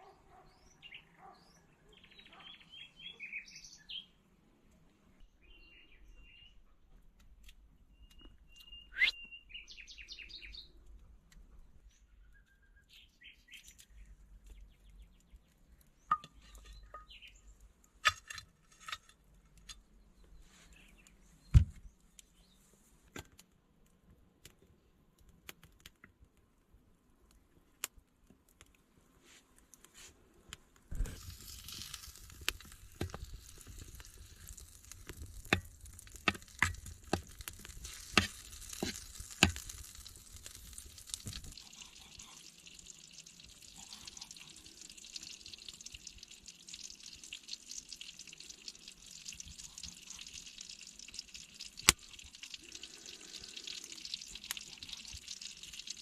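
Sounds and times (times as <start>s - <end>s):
food sizzling in hot pan: 31.0s - 56.0s.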